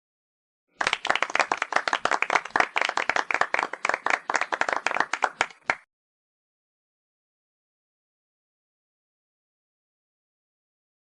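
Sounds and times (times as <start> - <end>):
rapid hand clapping: 0.8 - 5.9.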